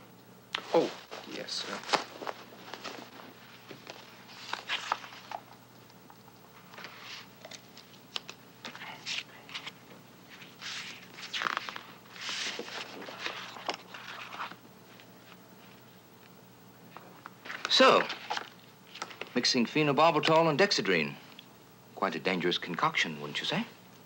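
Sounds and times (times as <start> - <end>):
faint room hum: 0.0 - 24.0
objects rustling and scraping: 0.6 - 5.6, 6.5 - 15.9, 16.8 - 19.4.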